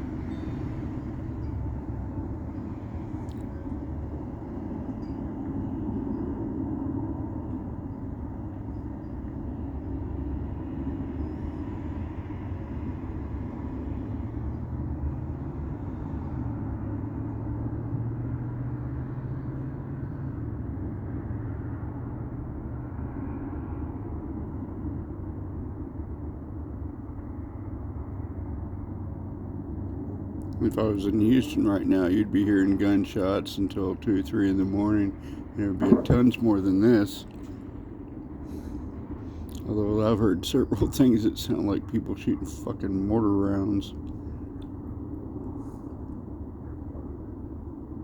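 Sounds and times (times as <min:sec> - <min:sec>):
vehicle running low rumble: 0:00.0 - 0:23.0, 0:29.8 - 0:48.0
low hum: 0:30.6 - 0:43.1.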